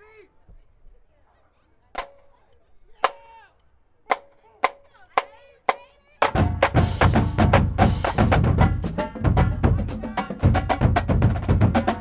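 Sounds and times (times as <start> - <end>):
marching drumline playing: 4.1 - 12.0.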